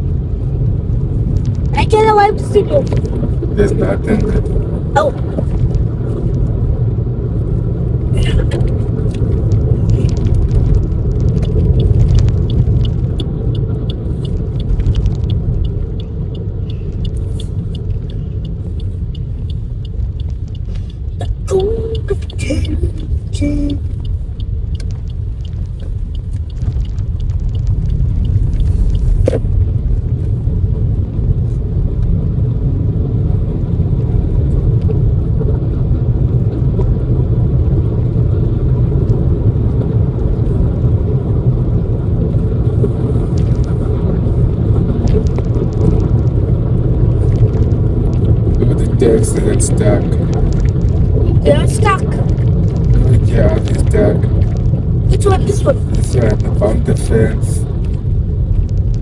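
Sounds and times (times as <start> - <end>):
car engine and road noise: 0.0 - 59.0.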